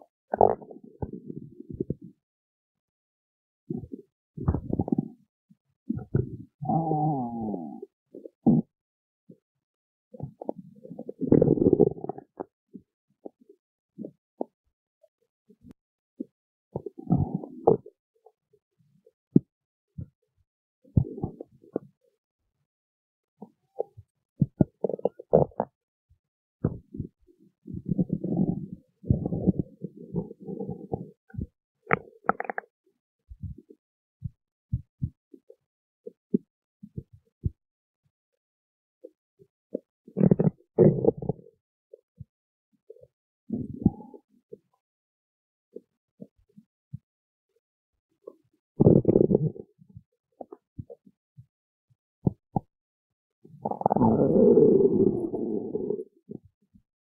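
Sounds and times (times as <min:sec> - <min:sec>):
stomach growling: 0:00.3 - 0:02.2, 0:03.7 - 0:05.3, 0:05.9 - 0:08.7, 0:10.2 - 0:12.5, 0:16.2 - 0:18.0, 0:20.9 - 0:22.0, 0:23.4 - 0:25.8, 0:26.6 - 0:32.7, 0:39.7 - 0:41.5, 0:43.5 - 0:44.6, 0:48.8 - 0:51.0, 0:53.5 - 0:56.5.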